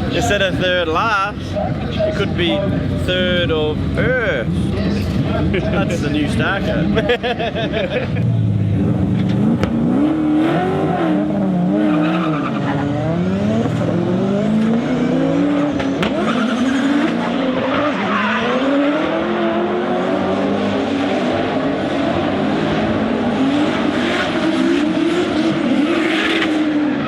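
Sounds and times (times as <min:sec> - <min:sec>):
tyres squealing and skidding: 0:00.0 - 0:03.0, 0:10.0 - 0:27.0
car engine revving: 0:00.0 - 0:27.0.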